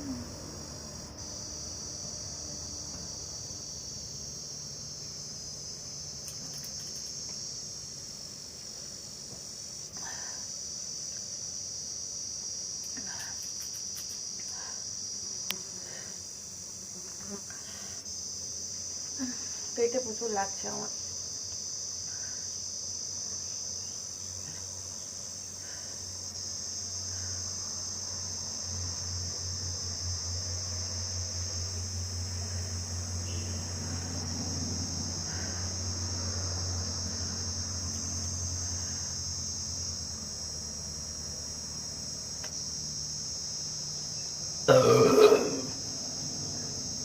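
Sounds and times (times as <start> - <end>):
low pulsing hum: 0.0 - 4.3
high-pitched insect chirring: 0.0 - 47.0.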